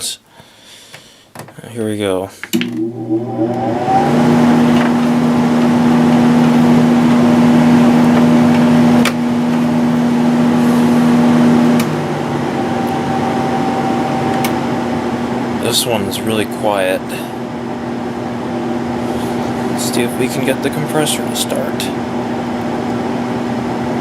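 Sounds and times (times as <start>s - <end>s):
air conditioner fan humming: 0.0s - 24.0s
air conditioner click: 2.5s - 12.1s, 14.0s - 14.7s.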